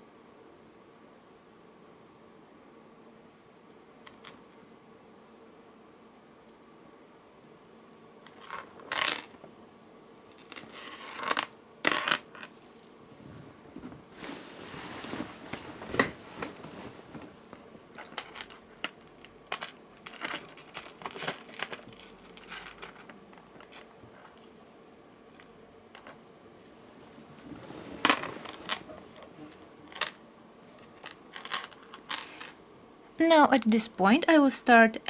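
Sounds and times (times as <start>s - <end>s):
beads clicking and rattling: 8.3s - 9.4s, 10.3s - 13.0s, 17.9s - 24.3s, 30.8s - 32.6s
rustling scrapes: 12.6s - 18.6s, 26.6s - 32.6s.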